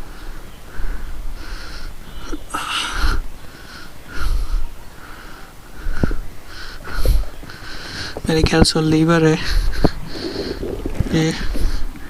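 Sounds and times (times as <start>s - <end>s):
person breathing close to microphone: 0.0s - 8.3s, 9.2s - 12.0s
low rumble: 9.6s - 12.0s.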